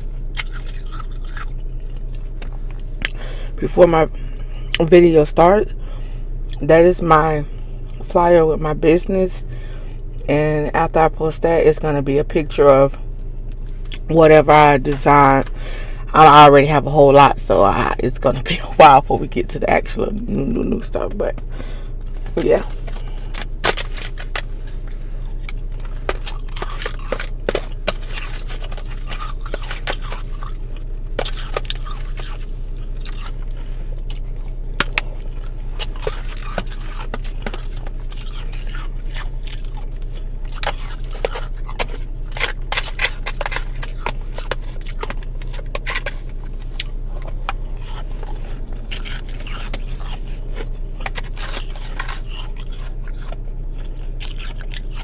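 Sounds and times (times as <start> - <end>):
low hum: 0.0 - 55.0
frost being scraped and crunched: 22.1 - 53.4.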